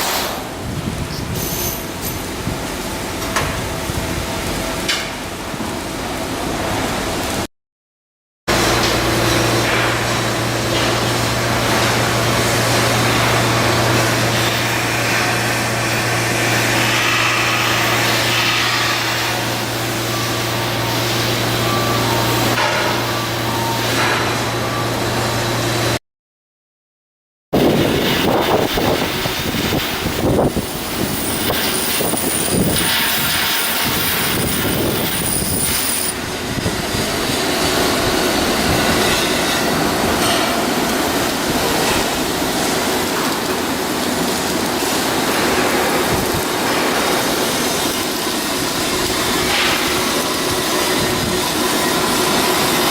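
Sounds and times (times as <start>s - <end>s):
thin high whine: 27.6s - 36.4s.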